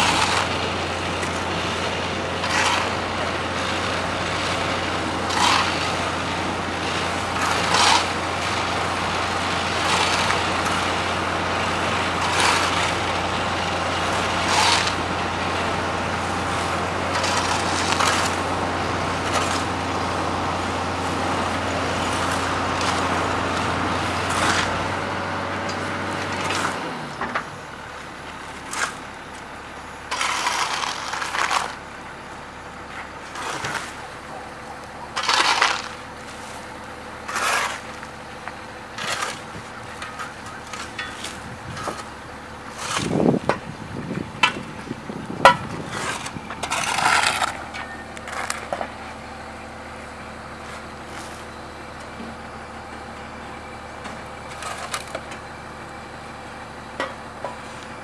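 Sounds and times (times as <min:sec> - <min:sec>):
scrapes and crunches: 0:00.0 - 0:00.6, 0:02.2 - 0:06.4, 0:07.0 - 0:24.9, 0:30.1 - 0:31.8, 0:32.9 - 0:49.2, 0:50.6 - 0:52.2, 0:54.0 - 0:55.5
heavy vehicle engine running: 0:00.0 - 0:58.0.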